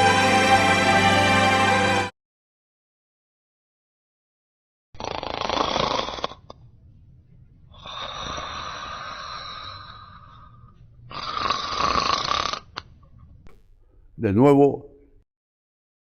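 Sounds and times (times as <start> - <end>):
loud snores: 5.0 - 6.6, 7.7 - 10.5, 11.1 - 12.9.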